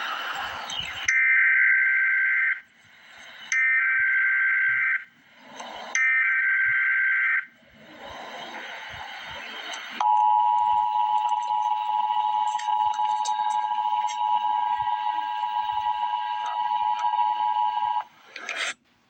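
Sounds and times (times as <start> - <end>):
chattering digital data tones: 8.8 - 18.1
two-tone attention signal: 10.0 - 18.1.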